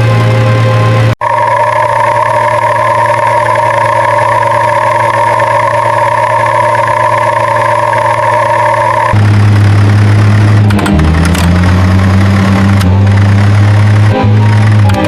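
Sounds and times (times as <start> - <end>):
deep hum shifting in pitch: 0.0 - 15.0
vehicle engine running: 0.0 - 15.0
clicks: 3.0 - 15.0.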